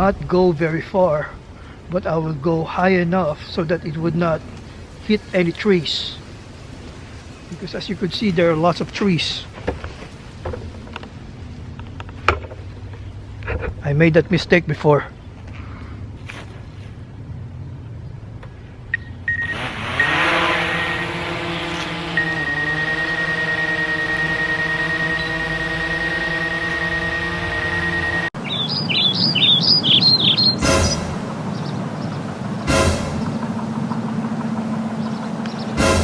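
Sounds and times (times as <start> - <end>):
quick rising chirps: 19.3 - 36.0
drone motors humming: 19.5 - 36.0
short knocks: 28.6 - 36.0.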